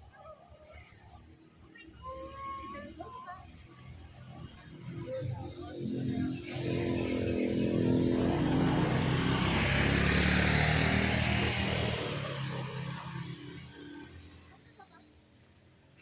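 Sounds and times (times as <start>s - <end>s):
vehicle engine passing by: 4.0s - 14.5s.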